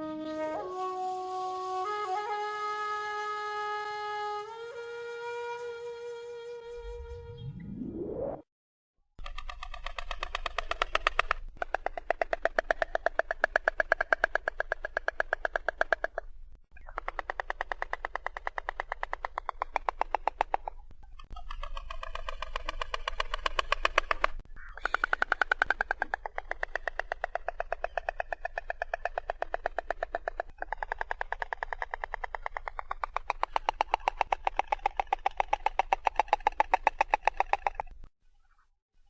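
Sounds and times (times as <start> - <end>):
stork bill clattering: 9.2 - 38.1.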